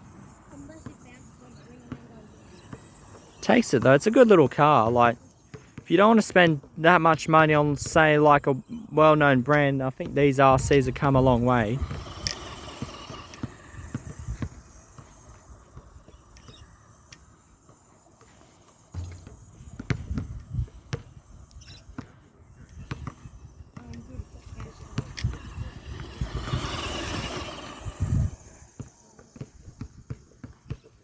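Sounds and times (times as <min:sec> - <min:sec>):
electric motor of toy truck: 0:10.5 - 0:18.9, 0:22.5 - 0:30.4.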